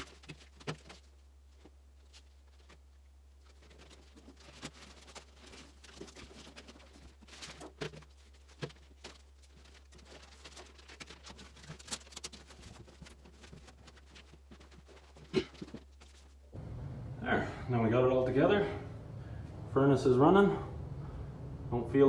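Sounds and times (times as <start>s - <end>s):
steady low hum: 12.5s - 22.0s.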